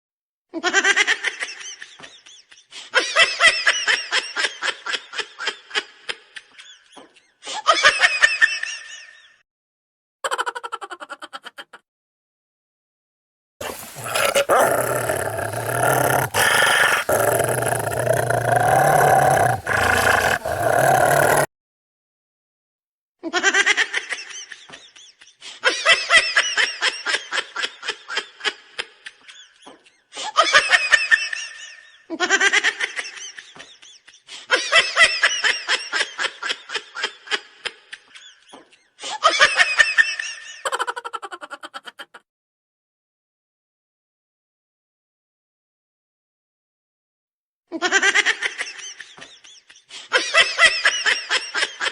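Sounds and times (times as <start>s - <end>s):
high-pitched cackling laughter: 10.2s - 11.8s.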